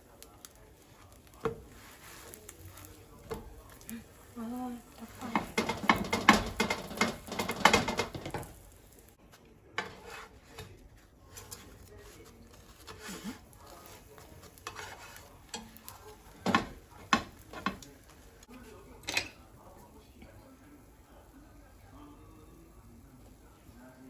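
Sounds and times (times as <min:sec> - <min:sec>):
food sizzling: 0:00.0 - 0:09.2, 0:11.2 - 0:24.0
utensil scraping frying pan: 0:00.4 - 0:09.1, 0:09.7 - 0:19.5.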